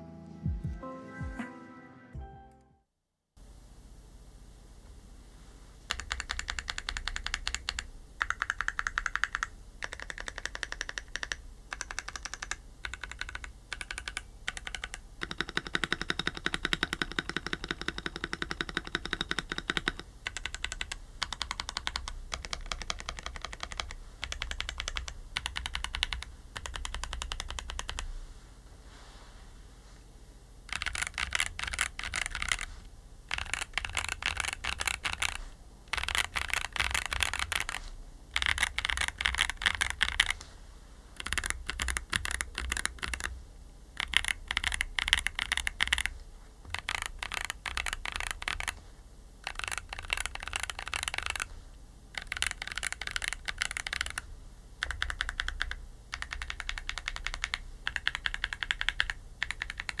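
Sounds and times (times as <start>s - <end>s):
mechanical keyboard typing: 5.9s - 28.1s, 30.7s - 40.5s, 41.2s - 48.8s, 49.4s - 60.0s.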